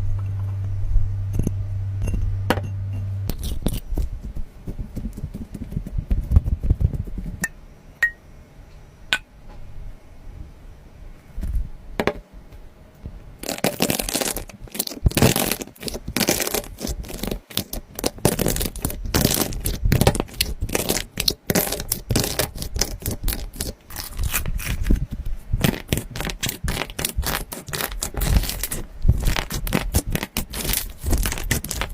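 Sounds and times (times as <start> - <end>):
slime popping and squelching: 3.3 - 7.2, 13.4 - 25.0, 25.6 - 31.9.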